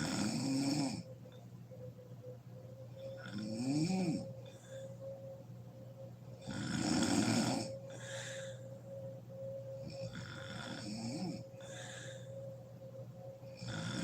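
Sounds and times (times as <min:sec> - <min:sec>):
woman snoring: 0:00.0 - 0:01.1, 0:03.0 - 0:04.8, 0:06.4 - 0:08.6, 0:09.8 - 0:12.3, 0:13.5 - 0:14.0
steady hum: 0:00.0 - 0:14.0.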